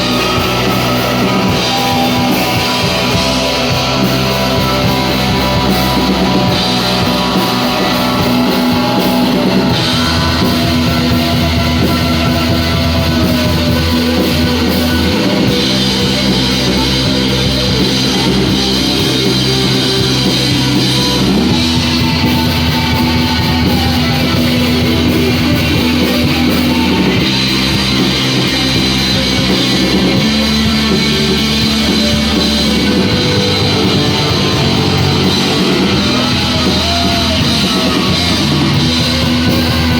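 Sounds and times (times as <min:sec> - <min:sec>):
distorted electric guitars: 0:00.0 - 0:39.9
drum kit: 0:00.0 - 0:39.9.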